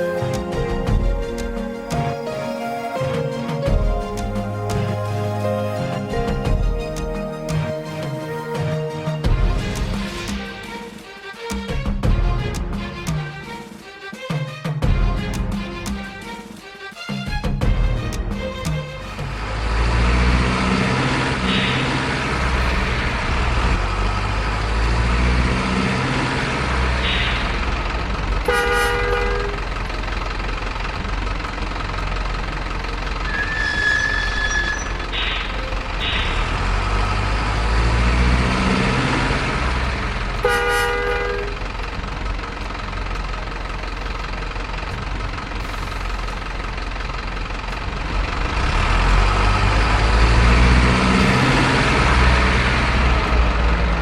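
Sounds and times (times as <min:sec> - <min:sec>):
diesel trucks rumbling: 0:00.0 - 0:13.8, 0:17.3 - 0:54.0
truck horn blasts: 0:19.7 - 0:23.4, 0:26.7 - 0:29.9, 0:33.2 - 0:41.7.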